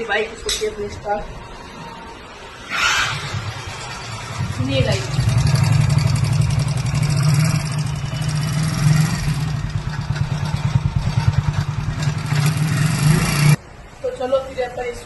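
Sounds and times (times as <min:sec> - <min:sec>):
motorcycle engine idling: 0:04.0 - 0:12.8.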